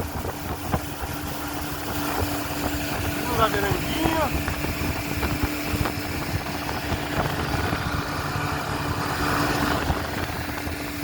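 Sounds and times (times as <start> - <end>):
low rumble: 0.0 - 11.0
outboard motor humming: 0.0 - 11.0.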